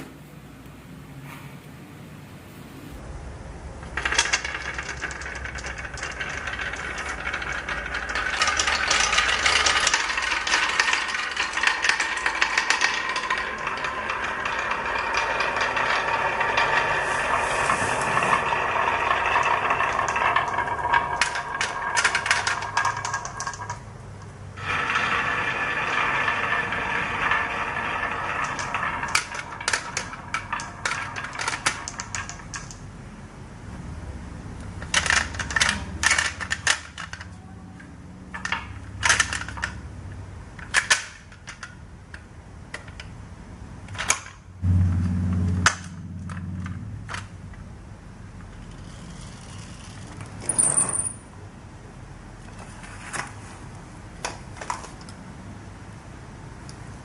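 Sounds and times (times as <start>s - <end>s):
marbles clicking down a track: 3.8s - 23.8s, 24.6s - 32.8s
low rumble: 44.6s - 49.0s.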